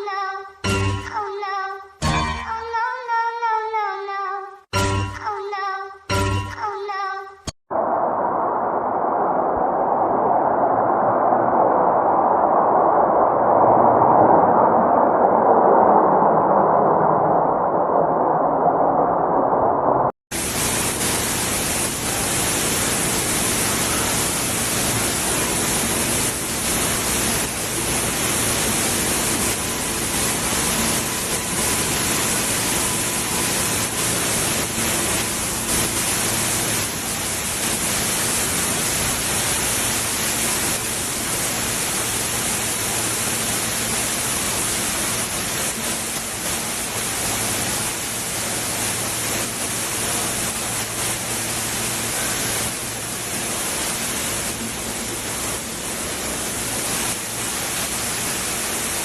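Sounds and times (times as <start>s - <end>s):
heavy rain: 20.3s - 59.0s.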